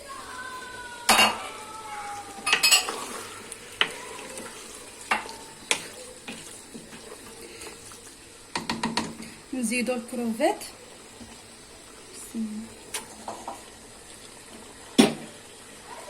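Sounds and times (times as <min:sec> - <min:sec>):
food sizzling in oil: 0:00.0 - 0:16.0
utensil clinking against pot: 0:02.4 - 0:03.0.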